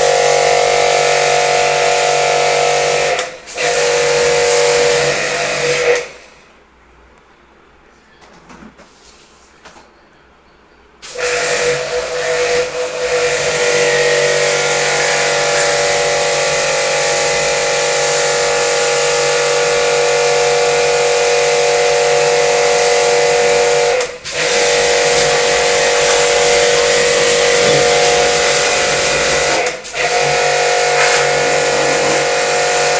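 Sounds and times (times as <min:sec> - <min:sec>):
pressure washer motor whine: 0:00.0 - 0:06.2, 0:11.0 - 0:32.9
water jet spraying hiss: 0:11.1 - 0:21.4, 0:22.2 - 0:32.9.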